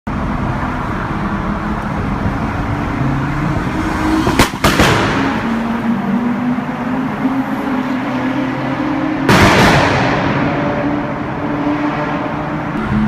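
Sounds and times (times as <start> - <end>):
sharp exhaust bangs: 4.2 - 5.8, 9.2 - 10.9.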